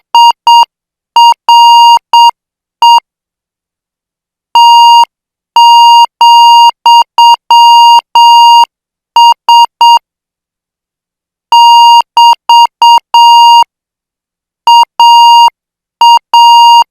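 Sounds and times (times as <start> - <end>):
morse code beeping tone: 14.7 - 16.9.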